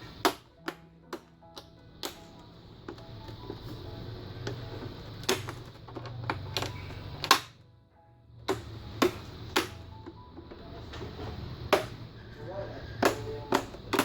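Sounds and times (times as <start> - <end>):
plastic clips snapping into place: 5.2 - 7.6.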